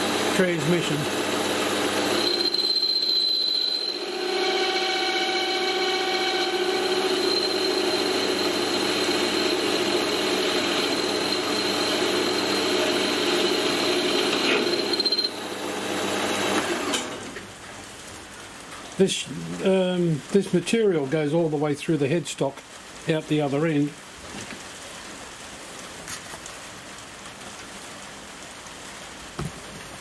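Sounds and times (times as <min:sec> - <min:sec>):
lathe tool chattering with squeal: 0:00.0 - 0:15.6.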